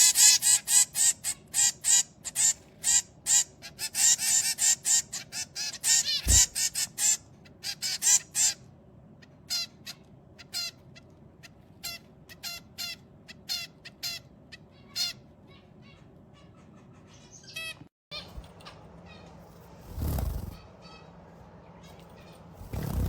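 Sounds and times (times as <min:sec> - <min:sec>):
finches calling: 0:00.0 - 0:08.6.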